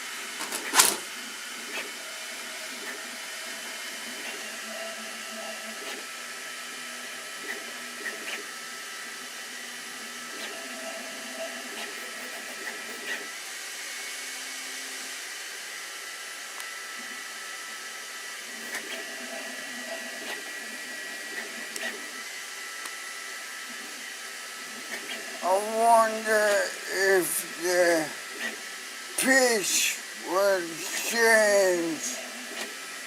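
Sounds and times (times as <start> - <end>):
printer fan hiss: 10.2 - 13.3.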